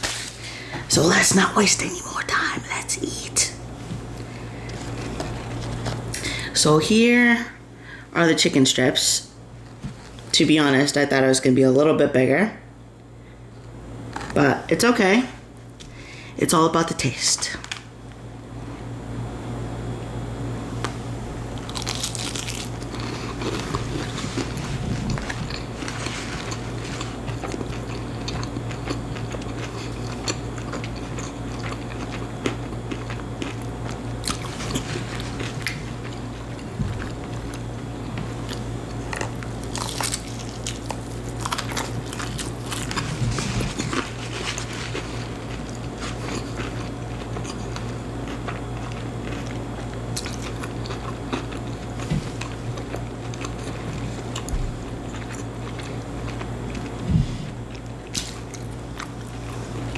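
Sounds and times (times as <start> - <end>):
crunching fried chicken: 21.4 - 57.0, 57.6 - 59.9
chewing: 21.6 - 57.0.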